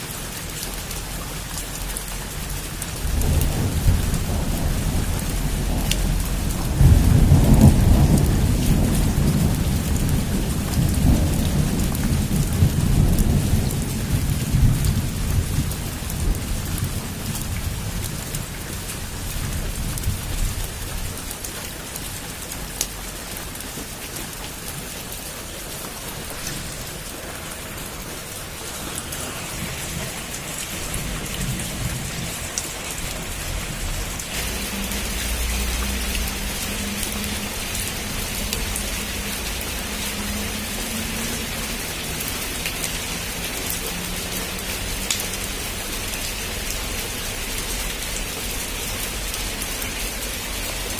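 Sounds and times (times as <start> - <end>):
heavy rain on a rooftop: 0.0 - 50.9
rolling thunder: 2.9 - 21.1, 25.9 - 41.1.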